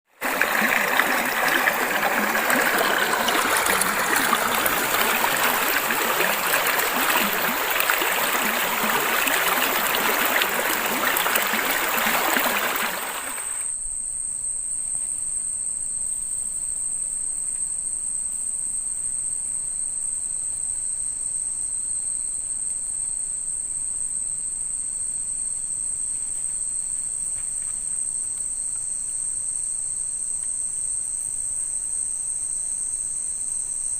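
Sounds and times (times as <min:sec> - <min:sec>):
stream rushing: 0:00.1 - 0:13.6
insects trilling: 0:00.2 - 0:13.7.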